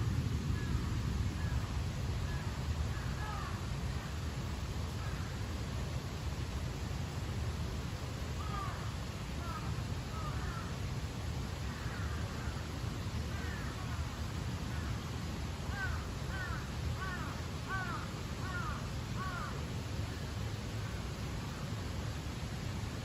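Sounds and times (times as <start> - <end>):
crow cawing: 2.3 - 3.6, 8.4 - 10.7, 11.6 - 12.6, 13.3 - 14.0, 15.7 - 19.6.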